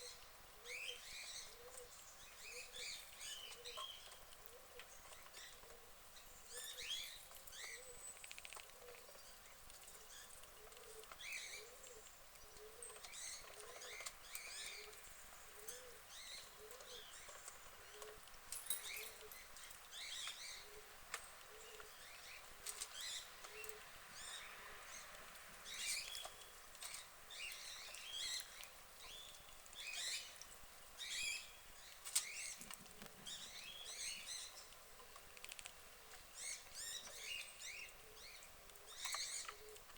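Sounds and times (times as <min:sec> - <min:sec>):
birds chirping: 0:00.0 - 0:39.9.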